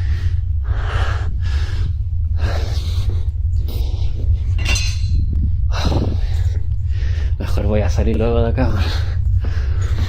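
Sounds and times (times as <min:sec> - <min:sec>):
low rumble: 0:00.0 - 0:10.0
clattering and clinking: 0:04.5 - 0:05.3.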